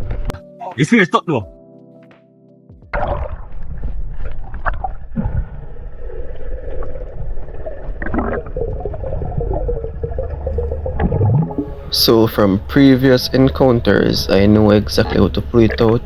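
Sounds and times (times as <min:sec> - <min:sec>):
muffled underwater rumble: 0:02.9 - 0:12.0, 0:13.3 - 0:16.0.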